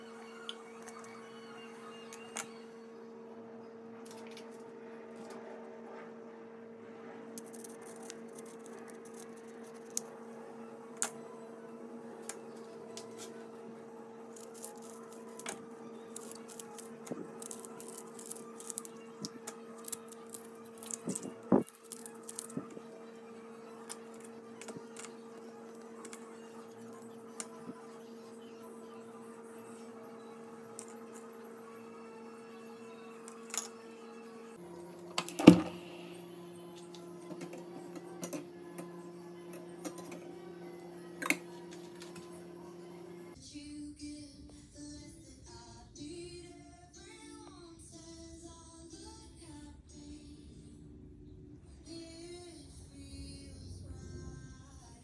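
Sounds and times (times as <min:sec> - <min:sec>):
steady electrical hum: 0:00.0 - 0:43.4.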